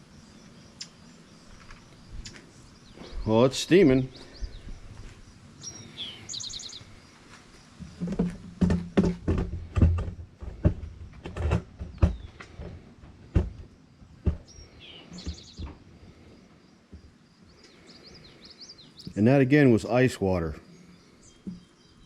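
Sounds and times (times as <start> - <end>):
bird chirping trills: 0.0 - 7.2, 14.4 - 15.8, 17.4 - 22.0
knocks and bumps: 7.8 - 15.9.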